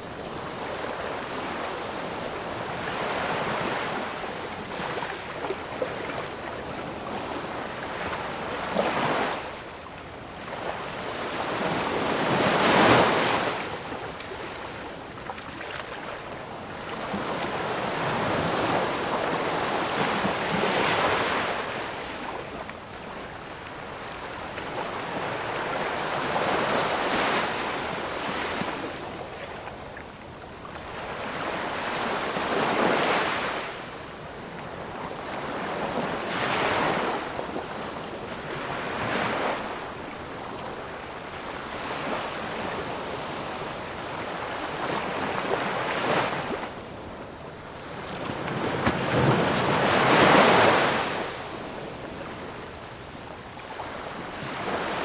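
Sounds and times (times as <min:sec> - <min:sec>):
ocean waves breaking on shore: 0:30.8 - 0:55.0.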